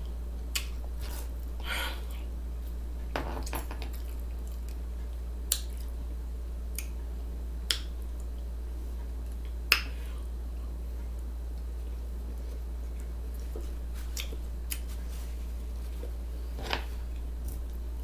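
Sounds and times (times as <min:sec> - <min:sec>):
steady low hum: 0:00.0 - 0:18.0
soft rustle: 0:13.3 - 0:17.2
wet mouth smacks eating: 0:14.1 - 0:14.9.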